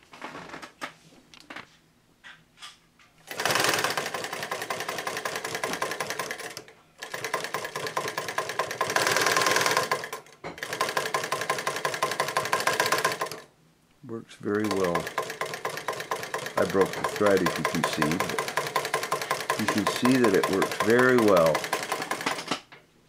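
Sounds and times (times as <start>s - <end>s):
sewing machine clattering: 3.3s - 13.5s, 14.5s - 22.6s.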